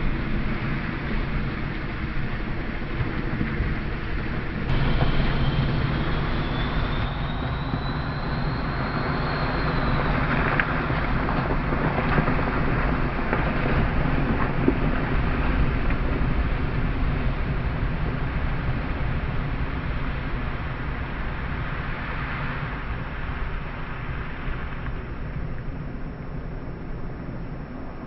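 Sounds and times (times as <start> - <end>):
faint high whine: 3.8 - 11.4
car engine running: 4.3 - 7.7.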